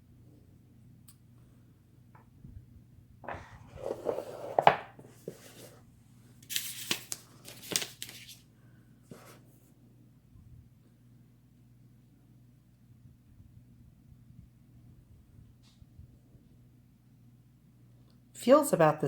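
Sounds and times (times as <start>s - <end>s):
plastic packaging rustling: 6.4s - 8.4s
plastic film tearing: 6.5s - 8.4s.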